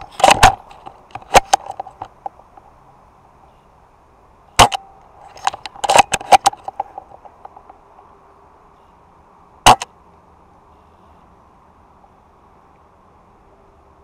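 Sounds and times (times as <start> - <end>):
airsoft gun cracks: 4.6 - 6.9, 9.7 - 9.9.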